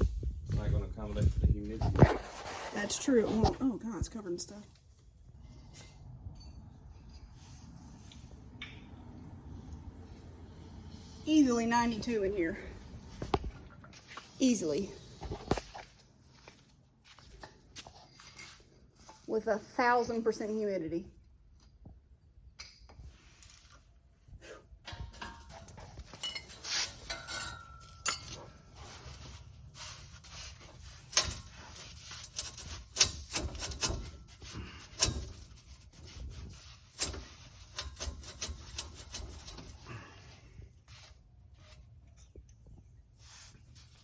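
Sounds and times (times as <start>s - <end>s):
metal tools clinking and knocking: 24.8s - 28.8s.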